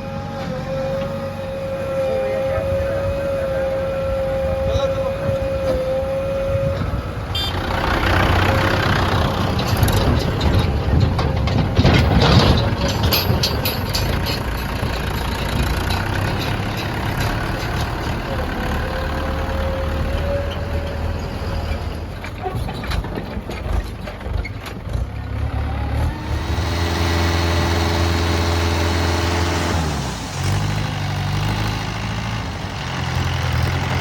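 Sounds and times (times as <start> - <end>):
heavy diesel engines running: 0.0 - 34.0
clattering knocks: 6.8 - 19.0.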